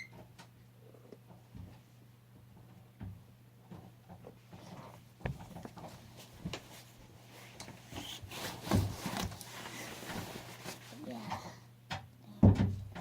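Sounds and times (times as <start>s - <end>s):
rubbing and rustling: 3.8s - 11.4s.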